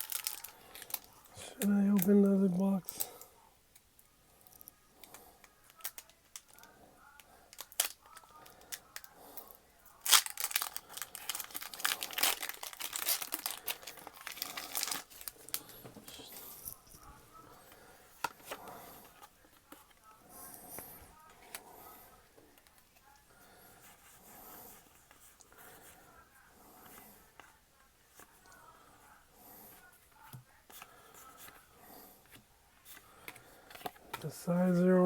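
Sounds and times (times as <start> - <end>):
packaging crinkling and tearing: 0.0 - 2.1, 7.5 - 9.1, 10.0 - 15.8.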